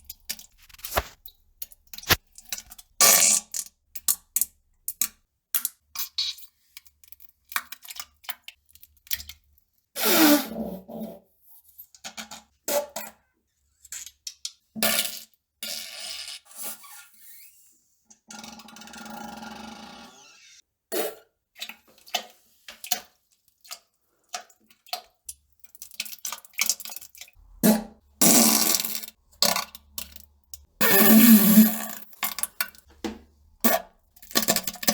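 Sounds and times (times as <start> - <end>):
farts: 27.7 - 28.8, 30.8 - 32.0.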